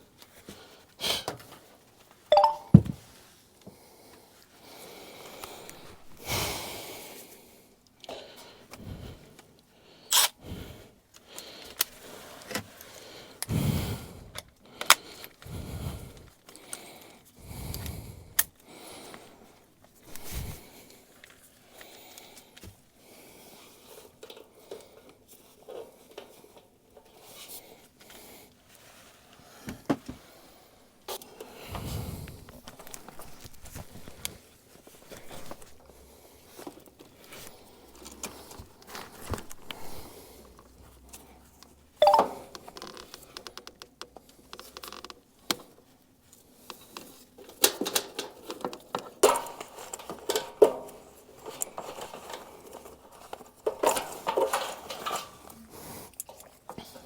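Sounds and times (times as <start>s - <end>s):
handling clicks and rattling: 47.0s - 55.5s.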